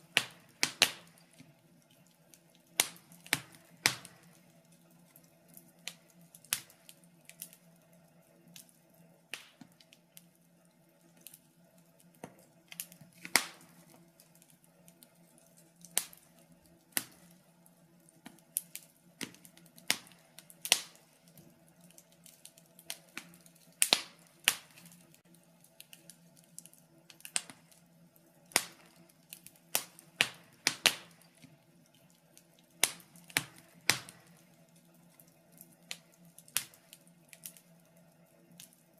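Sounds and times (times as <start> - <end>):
wood fire crackling: 0.0 - 38.9.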